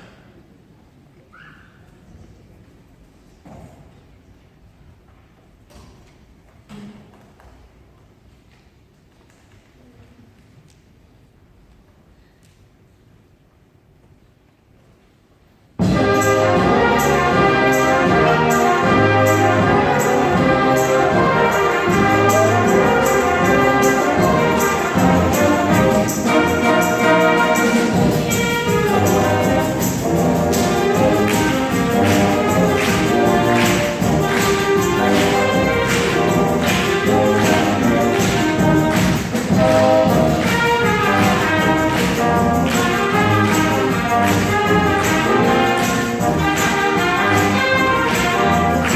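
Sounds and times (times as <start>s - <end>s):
trumpets and trombones: 15.8s - 48.9s
wind band playing: 15.8s - 48.9s.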